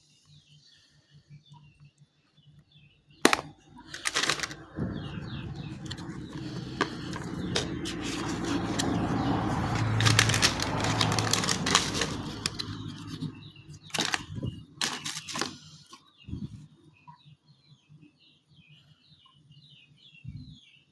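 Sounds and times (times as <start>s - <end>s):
small birds chirping: 0.0s - 20.9s
rustling handling noise: 3.2s - 16.1s.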